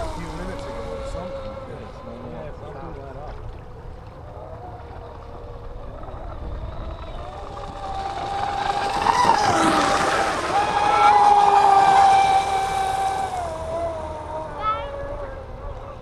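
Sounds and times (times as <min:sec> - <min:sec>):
electric boat motor whining: 0:00.0 - 0:16.0
water spray rushing: 0:07.4 - 0:14.3.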